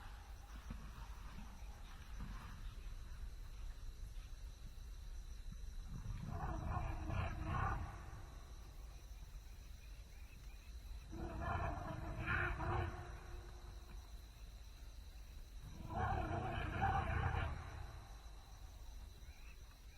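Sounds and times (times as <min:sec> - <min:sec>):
elephant roaring: 0:11.1 - 0:13.5, 0:15.7 - 0:18.1.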